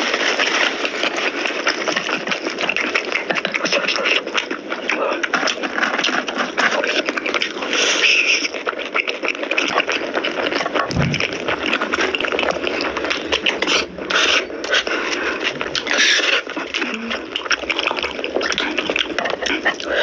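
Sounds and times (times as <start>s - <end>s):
wet chewing and lip smacking: 0.0s - 20.0s
loud slurps: 5.4s - 20.0s.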